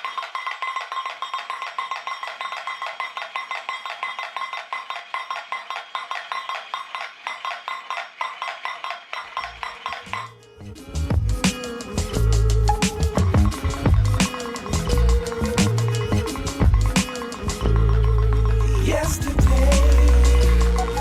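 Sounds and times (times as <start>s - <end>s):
clockwork toy clicking: 0.0s - 10.4s, 14.1s - 18.8s
tinny metallic ringing: 0.0s - 10.6s.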